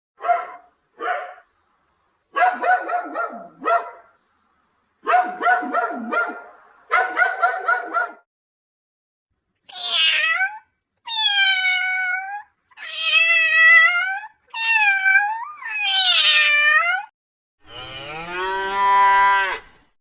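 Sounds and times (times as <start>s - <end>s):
dog barking short yaps: 0.2s - 1.4s, 2.4s - 4.0s, 5.1s - 8.2s.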